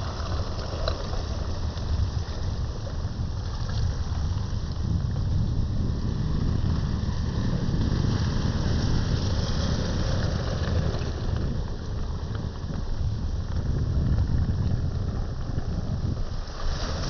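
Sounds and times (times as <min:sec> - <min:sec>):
wind buffeting microphone: 0:00.0 - 0:17.0
sea surf hiss: 0:16.3 - 0:17.0.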